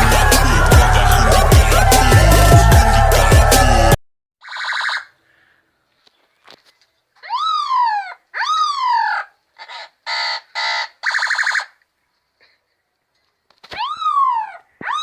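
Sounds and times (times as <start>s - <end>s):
person imitating a police siren: 0.0s - 5.1s, 13.8s - 15.0s.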